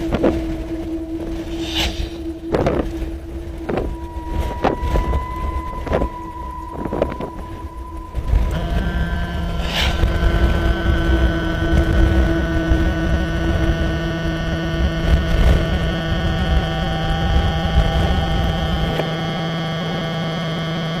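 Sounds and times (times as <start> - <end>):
rough low rumble: 0.0 - 20.6
steady hum of fixed tones: 0.0 - 21.0.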